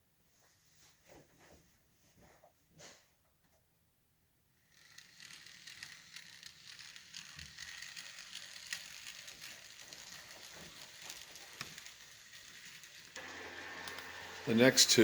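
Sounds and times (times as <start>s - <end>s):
model trains hissing rattle: 4.6s - 15.0s
small clicks from wheels: 4.6s - 15.0s.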